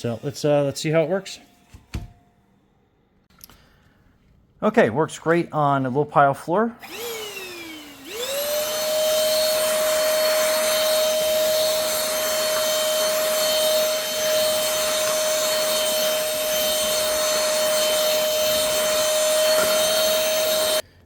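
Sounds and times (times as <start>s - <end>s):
vacuum cleaner motor whining: 6.8s - 20.8s.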